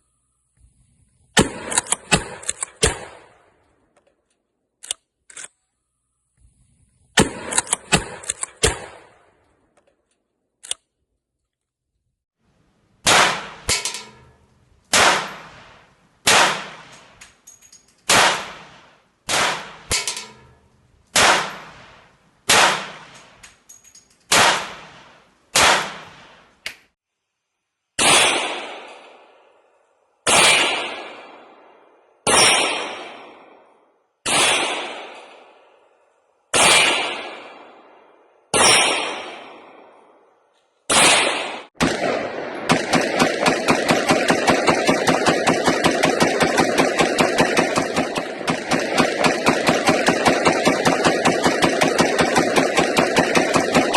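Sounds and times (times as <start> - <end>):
gunshots: 1.4 - 3.5, 7.2 - 9.4, 13.0 - 13.9, 14.9 - 17.2, 18.1 - 20.2, 21.1 - 23.4, 24.3 - 26.5, 28.0 - 29.4, 30.3 - 31.7, 34.3 - 35.6, 36.6 - 38.0, 38.6 - 40.0, 40.9 - 53.9.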